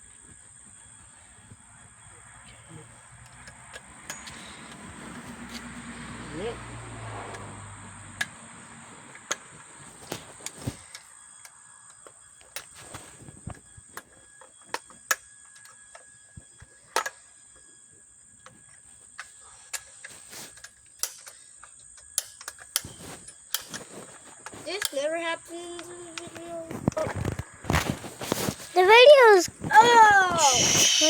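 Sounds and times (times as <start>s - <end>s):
chainsaw parts clicking and knocking: 3.1s - 5.5s, 18.7s - 25.0s.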